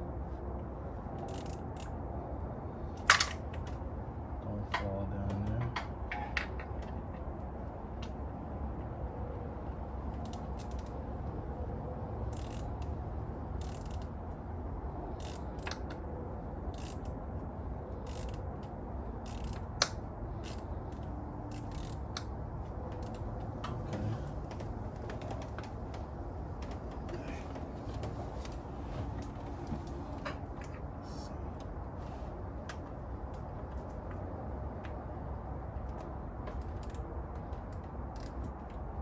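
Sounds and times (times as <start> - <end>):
ratchet wrench and tools clicking: 1.2 - 2.0, 3.0 - 3.8, 10.1 - 11.0, 12.2 - 14.1, 15.1 - 16.0, 16.7 - 17.2, 18.0 - 23.8, 36.6 - 38.8.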